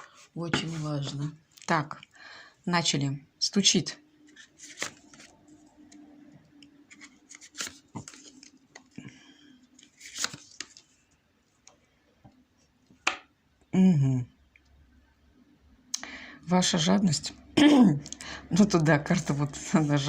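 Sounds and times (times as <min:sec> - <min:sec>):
faint steady hum: 0:00.9 - 0:20.0
cards shuffling: 0:04.3 - 0:06.0, 0:06.8 - 0:09.0, 0:09.8 - 0:11.0.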